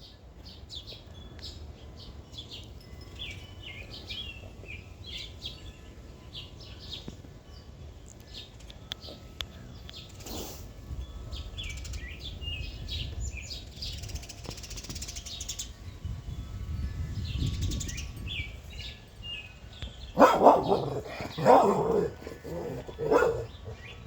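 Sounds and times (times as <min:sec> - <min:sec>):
small birds chirping: 0:00.0 - 0:24.0
dog barking: 0:20.2 - 0:23.8.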